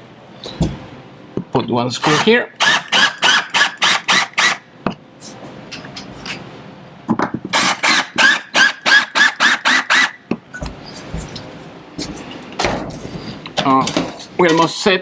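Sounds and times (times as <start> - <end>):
cordless drill whining: 7.6 - 10.2.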